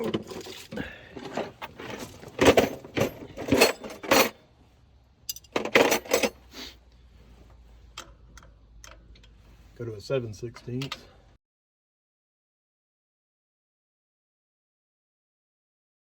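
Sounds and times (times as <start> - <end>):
metal wrenches clinking: 0.0 - 4.4, 5.2 - 6.5, 10.5 - 11.1.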